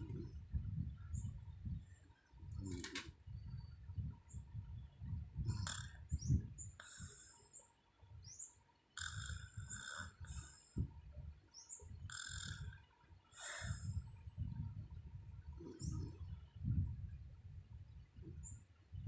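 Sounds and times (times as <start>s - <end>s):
woman snoring: 5.6s - 5.9s, 9.0s - 10.6s, 12.1s - 12.6s, 13.4s - 13.8s
birds chirping and whistling: 11.6s - 12.7s.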